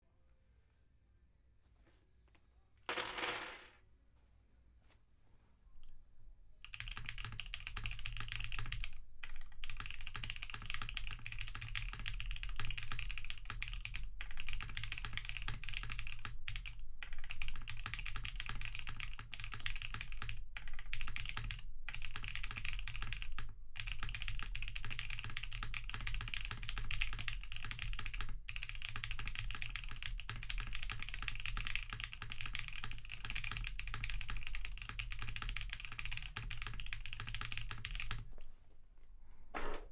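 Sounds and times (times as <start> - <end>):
fast mechanical keyboard typing: 6.6 - 38.3.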